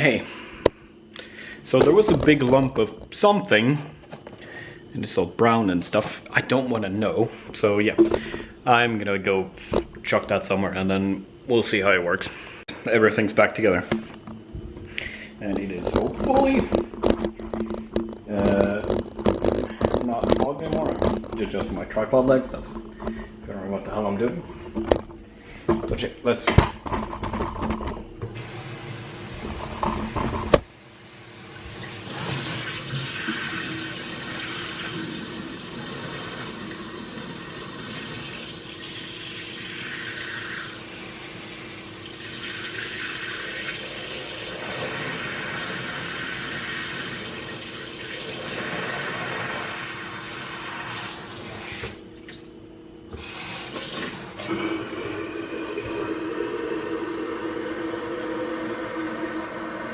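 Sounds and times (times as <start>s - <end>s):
tap water running into sink: 28.4s - 41.3s, 53.2s - 59.9s.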